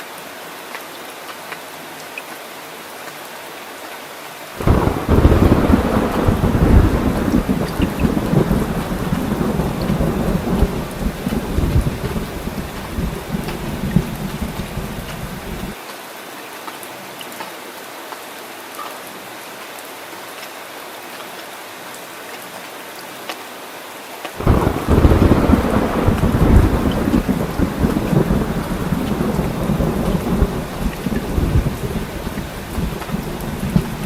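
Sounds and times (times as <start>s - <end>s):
rain hiss: 0.0s - 34.0s
thunder rumbling: 4.6s - 15.8s, 24.4s - 34.0s.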